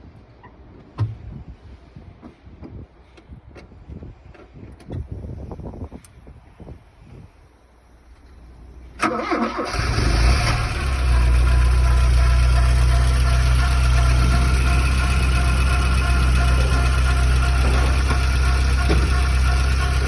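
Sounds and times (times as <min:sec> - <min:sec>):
car engine idling: 0:06.8 - 0:20.0.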